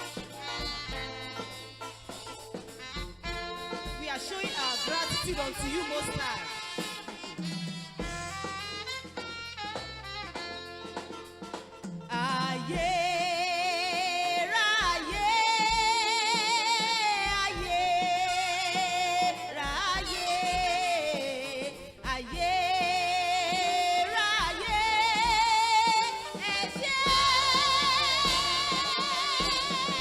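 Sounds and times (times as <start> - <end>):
person singing with heavy vibrato: 3.5 - 7.5, 12.1 - 30.0.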